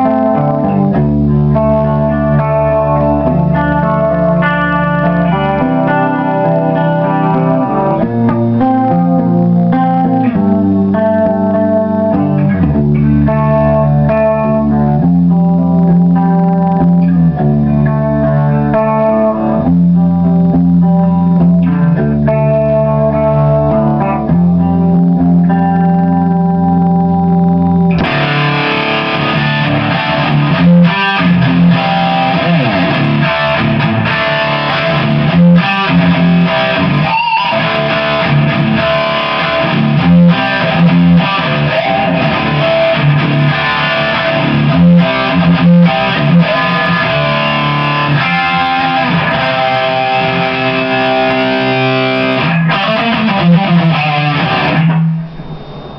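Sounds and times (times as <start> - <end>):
distorted electric guitar riffing: 0.0 - 55.9.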